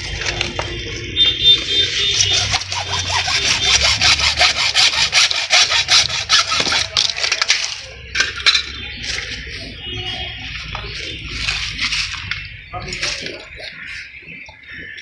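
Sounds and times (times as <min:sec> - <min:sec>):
hacksaw cutting plastic pipe: 0:01.9 - 0:07.9.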